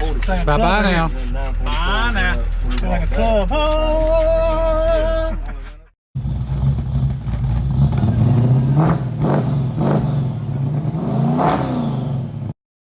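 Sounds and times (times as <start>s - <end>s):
car engine rumbling and revving: 6.2s - 12.6s.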